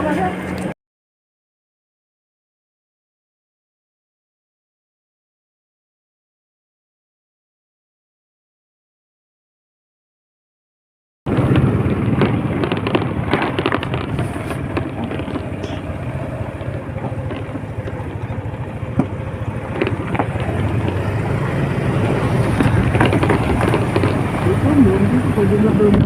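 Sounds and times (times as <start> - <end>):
motorcycle engine running: 11.3 - 26.0
wind buffeting microphone: 11.3 - 26.0.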